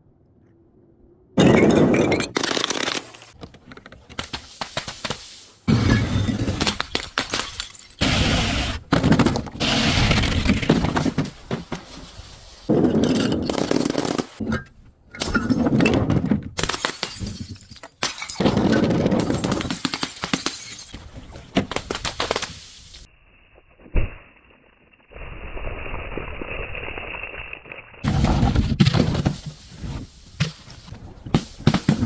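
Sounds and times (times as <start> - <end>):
glass bottles breaking: 1.4 - 3.1, 5.8 - 8.0, 16.6 - 21.0
glass shards clattering: 7.2 - 8.0.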